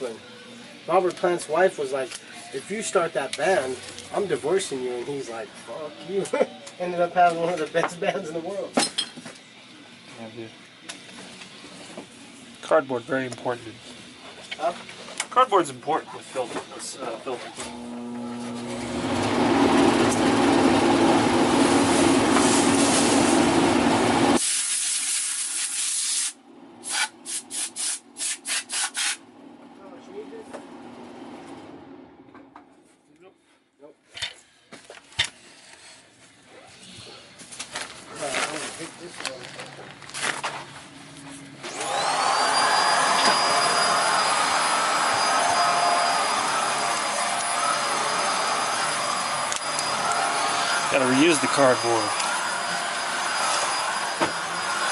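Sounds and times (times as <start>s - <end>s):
vacuum cleaner running: 15.3s - 24.6s, 26.5s - 32.7s, 41.6s - 54.9s
electric motor humming: 17.6s - 24.4s, 41.6s - 54.9s
quick rubbing strokes: 24.4s - 29.2s.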